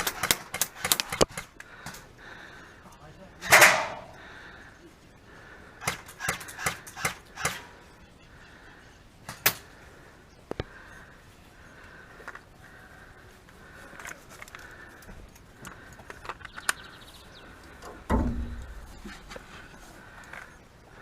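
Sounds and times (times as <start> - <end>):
airsoft gun shots: 3.4 - 4.2, 5.8 - 7.7.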